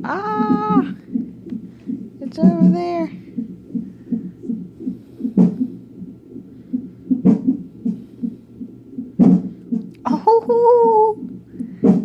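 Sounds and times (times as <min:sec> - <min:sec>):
fetal heartbeat on doppler: 0:00.0 - 0:12.0
louder thumps: 0:00.4 - 0:05.8, 0:06.7 - 0:08.4, 0:09.0 - 0:09.9, 0:11.7 - 0:12.0.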